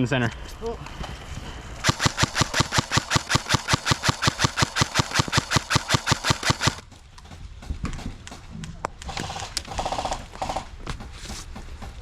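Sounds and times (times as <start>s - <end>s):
airsoft gun full-auto firing: 1.8s - 6.8s.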